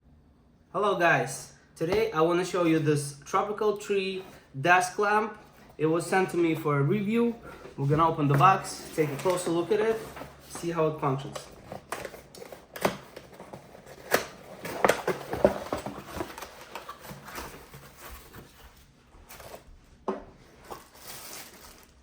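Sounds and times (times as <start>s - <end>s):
packaging clicks and rustles: 8.2s - 18.6s, 20.6s - 22.0s.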